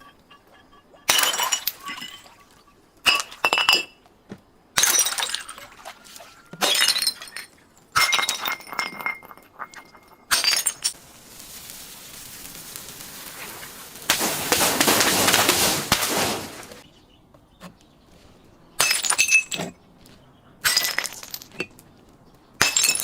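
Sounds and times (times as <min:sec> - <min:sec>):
glass bottles smashing: 0:00.0 - 0:04.0, 0:04.8 - 0:11.0, 0:12.2 - 0:16.8, 0:18.8 - 0:19.6, 0:20.6 - 0:21.7, 0:22.6 - 0:23.0
steady hiss: 0:10.6 - 0:16.8.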